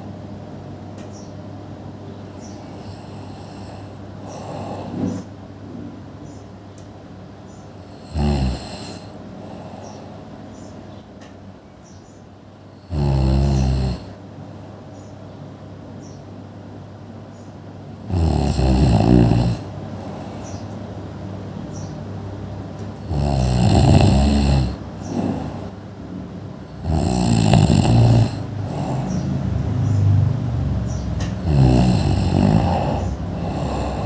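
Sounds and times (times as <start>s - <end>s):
soft breaths: 2.3s - 5.3s, 7.8s - 10.7s, 17.9s - 20.9s, 22.8s - 25.8s, 26.7s - 34.0s
person snoring with rattle: 2.5s - 5.3s, 7.8s - 10.0s, 12.7s - 14.2s, 18.0s - 20.6s, 23.0s - 25.8s, 26.7s - 34.0s.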